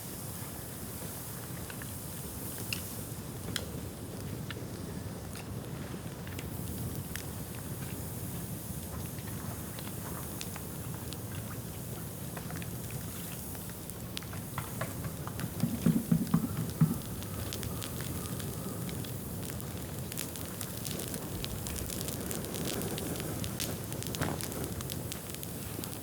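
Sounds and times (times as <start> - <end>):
bamboo fire crackling: 1.8 - 26.0
low knocks: 15.6 - 17.6.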